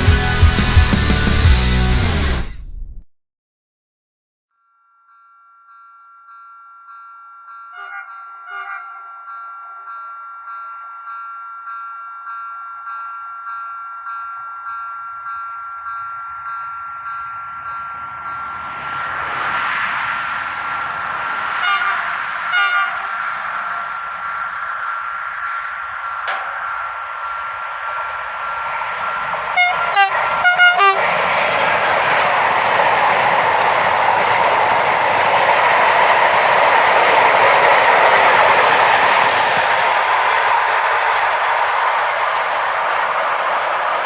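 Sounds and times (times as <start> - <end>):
freight wagon wheels on rail: 5.2 - 44.0
electric locomotive whine: 5.7 - 44.0
train horn blasts: 7.7 - 9.9, 21.6 - 24.0, 29.5 - 31.1.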